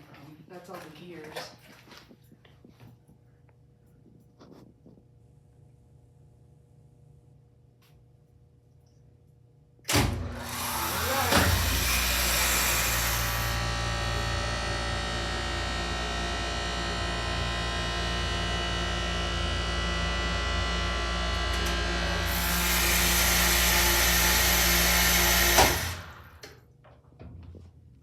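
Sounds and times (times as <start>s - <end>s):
hydraulic elevator pump motor humming: 9.9s - 26.6s.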